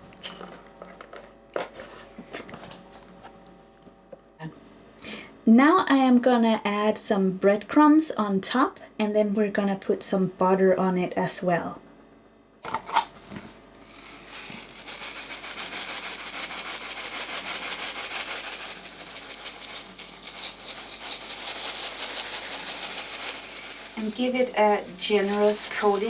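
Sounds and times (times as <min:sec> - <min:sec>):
breadcrumbs rustling patter: 0:13.4 - 0:26.0.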